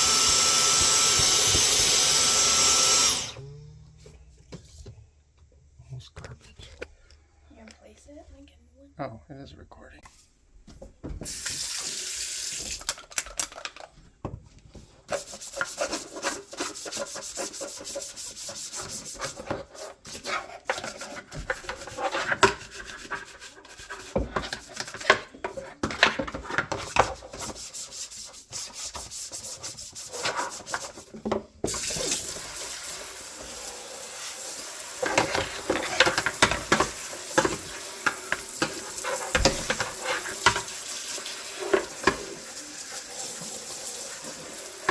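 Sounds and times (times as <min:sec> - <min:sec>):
running tap hiss: 0:00.0 - 0:03.4, 0:11.2 - 0:13.0, 0:31.7 - 0:44.9
scrubbing plastic cover: 0:15.1 - 0:33.6, 0:35.0 - 0:44.9.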